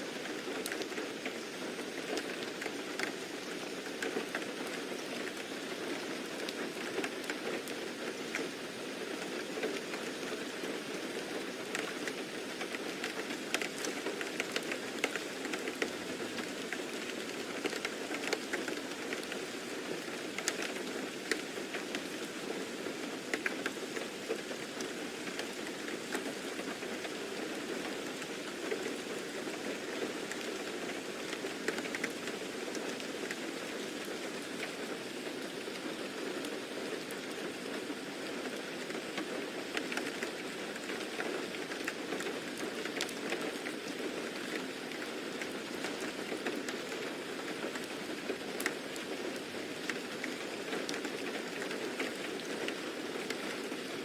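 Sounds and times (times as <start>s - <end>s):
steady rain: 0.0s - 54.0s
raindrops ticking: 11.7s - 36.2s, 38.4s - 54.0s.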